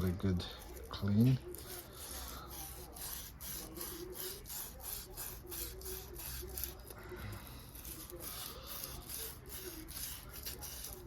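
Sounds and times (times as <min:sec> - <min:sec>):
sandpaper rubbing metal: 0:00.6 - 0:06.9, 0:07.7 - 0:11.0.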